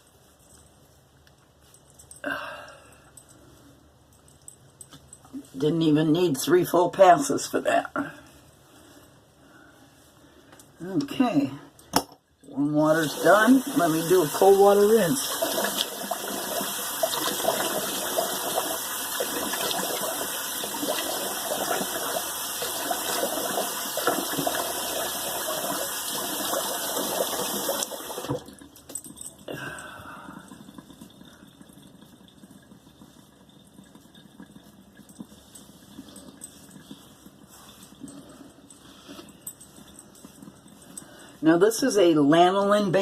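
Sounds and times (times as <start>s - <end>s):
water running from sink tap: 12.6s - 28.8s, 29.8s - 38.2s.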